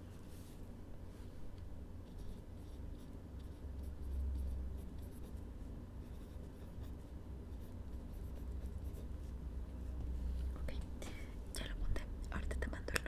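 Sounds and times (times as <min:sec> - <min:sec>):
pen scratching on paper: 0:06.0 - 0:09.3.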